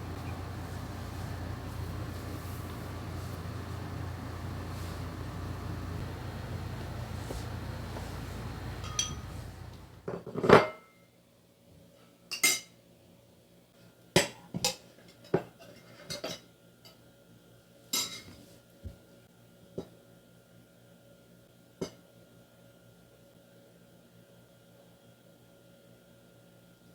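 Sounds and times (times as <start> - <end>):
steady rushing noise: 0.0 - 10.0
dishes and cutlery clinking: 8.7 - 10.8.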